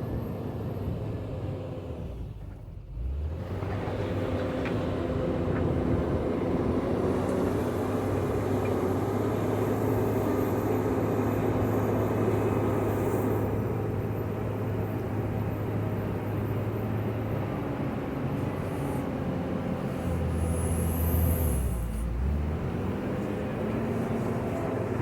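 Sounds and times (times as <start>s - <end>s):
diesel engine under load: 0.3s - 25.0s.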